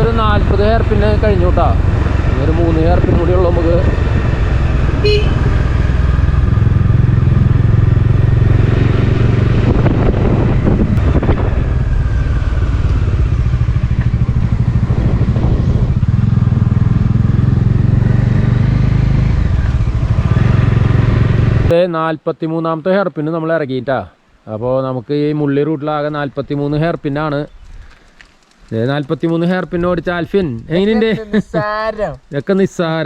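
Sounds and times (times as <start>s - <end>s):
motorcycle engine running: 0.0s - 21.7s.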